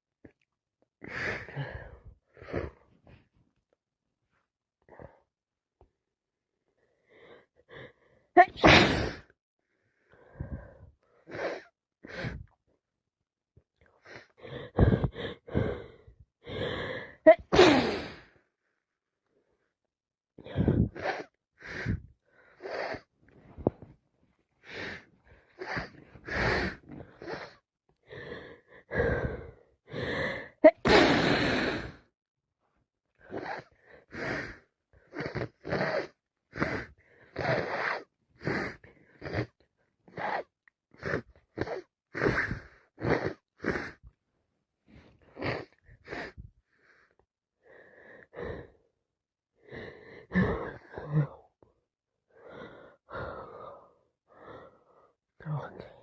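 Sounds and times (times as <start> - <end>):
person sneezing: 8.4 - 9.2, 17.3 - 18.2, 30.6 - 31.6
sharp gasping breaths: 14.0 - 18.4, 20.4 - 23.8, 24.6 - 32.1, 33.2 - 44.2.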